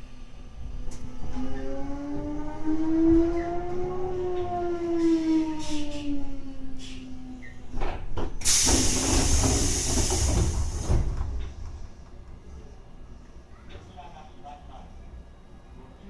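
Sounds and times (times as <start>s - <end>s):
compressed air hiss: 8.4s - 11.6s.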